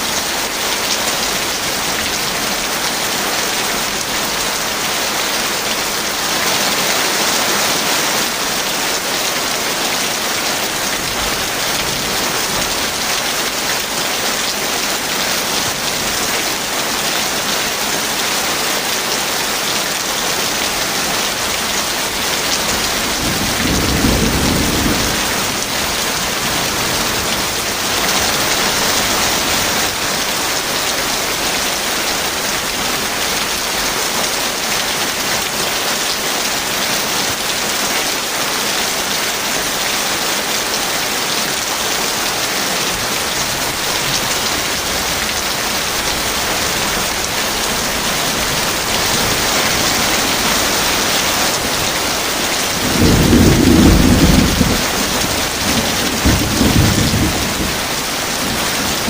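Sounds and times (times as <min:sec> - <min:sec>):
heavy rain falling: 0:00.0 - 0:59.0
low rumble of thunder: 0:23.0 - 0:26.7, 0:52.8 - 0:58.0.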